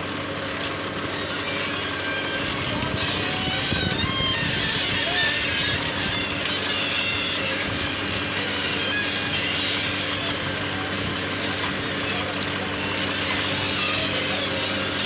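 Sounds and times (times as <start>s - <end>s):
loud rough grinding: 0.0s - 15.0s
machinery engine drone: 0.0s - 15.0s.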